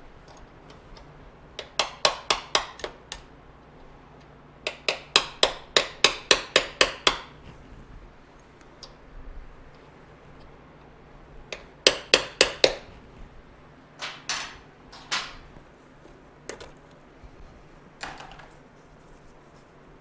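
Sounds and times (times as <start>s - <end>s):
metal tools clanking on metal: 14.0s - 15.6s.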